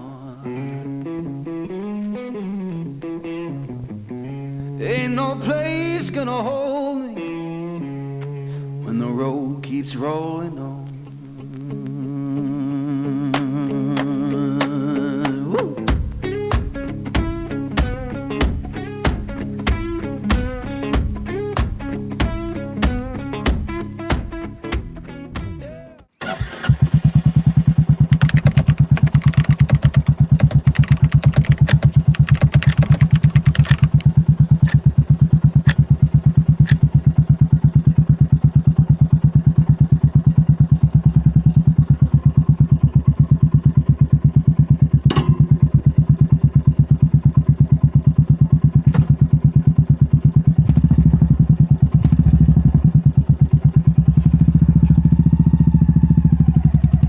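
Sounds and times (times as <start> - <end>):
motorcycle engine idling: 26.7 - 29.2, 33.9 - 45.0
clicks and clatter: 28.1 - 37.0.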